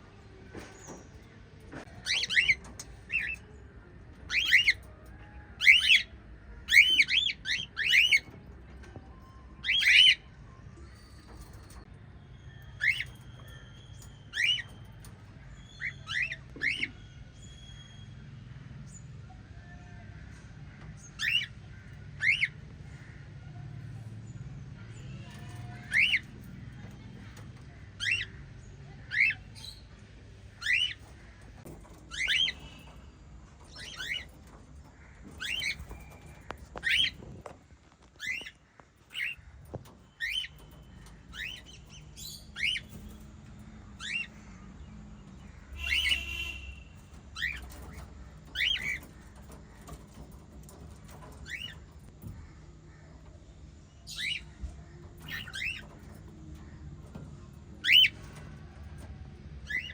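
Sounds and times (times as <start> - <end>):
parrots chirping: 1.8 - 3.5, 12.5 - 18.2, 25.0 - 53.2, 53.9 - 59.9.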